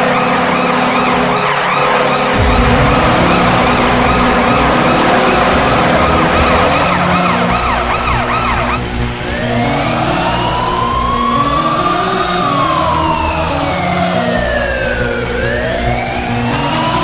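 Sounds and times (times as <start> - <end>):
siren winding up: 0.0 - 17.0
up-and-down siren wail: 0.0 - 17.0
low goal horn tone: 2.3 - 11.2.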